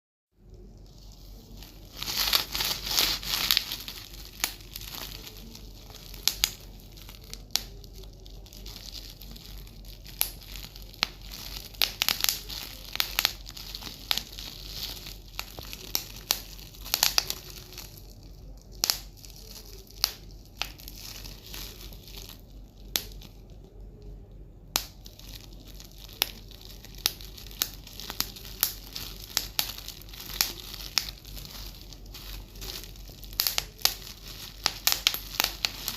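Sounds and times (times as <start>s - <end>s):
bubble wrap popping: 0.4s - 35.9s
plastic crinkling: 0.4s - 35.9s.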